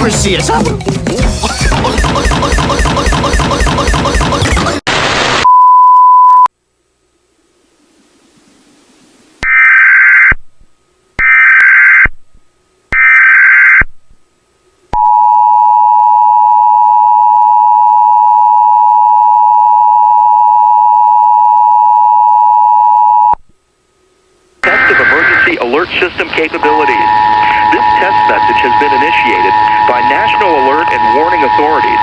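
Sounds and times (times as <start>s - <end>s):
digital data bursts: 1.8s - 5.4s, 24.6s - 32.0s
two-tone attention signal: 26.8s - 32.0s.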